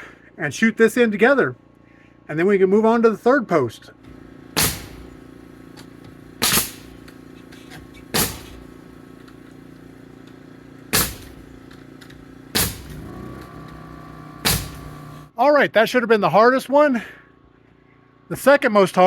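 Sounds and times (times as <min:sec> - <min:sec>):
nail gun firing: 0:04.5 - 0:05.2, 0:05.8 - 0:08.7, 0:10.9 - 0:13.8, 0:14.4 - 0:15.1.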